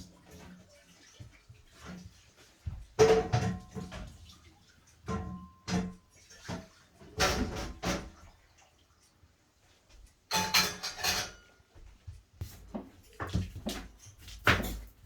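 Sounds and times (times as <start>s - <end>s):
dishes and pots clattering: 2.7s - 4.4s, 5.0s - 8.3s, 10.3s - 11.6s, 12.8s - 15.0s.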